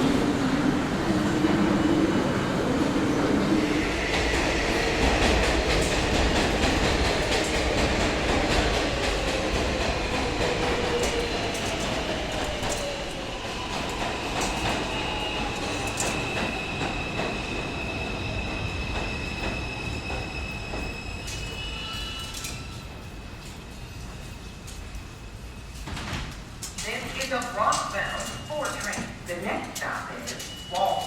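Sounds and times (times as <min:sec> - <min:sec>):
subway train slowing down: 0:00.0 - 0:31.0.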